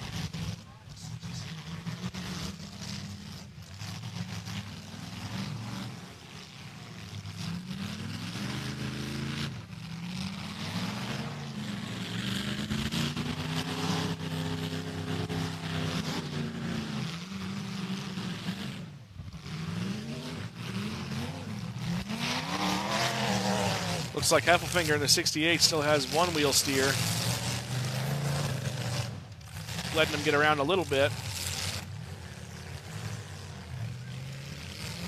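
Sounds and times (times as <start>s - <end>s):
car engines revving: 0.0s - 35.0s.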